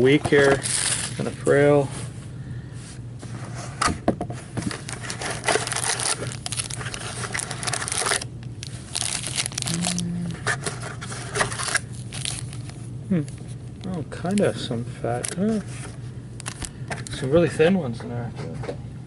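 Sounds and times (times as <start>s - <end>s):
cardboard and foil wrappers crinkling: 0.3s - 1.6s, 4.7s - 13.5s.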